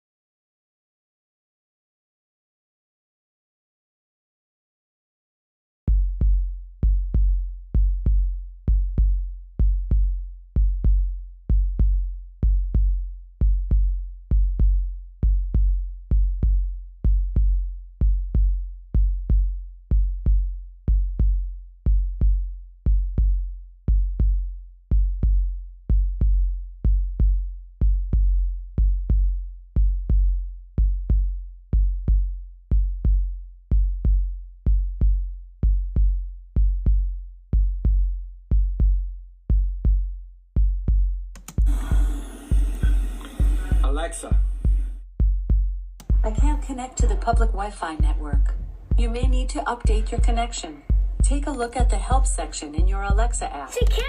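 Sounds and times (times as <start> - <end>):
heartbeat double thump: 41.6 - 53.4.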